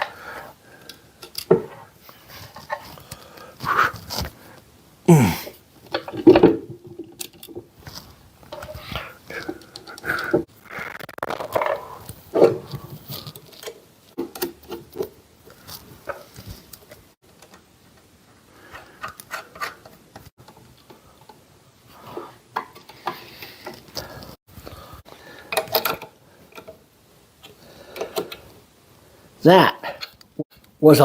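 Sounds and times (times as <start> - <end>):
metal clicks and scrapes: 18.7 - 21.4.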